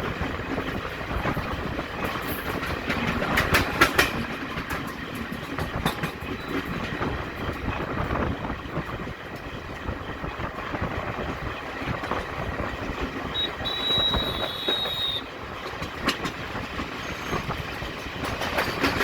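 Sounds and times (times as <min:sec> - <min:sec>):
train rumbling on rails: 0:00.0 - 0:19.0
wheels clattering over track: 0:00.0 - 0:19.0.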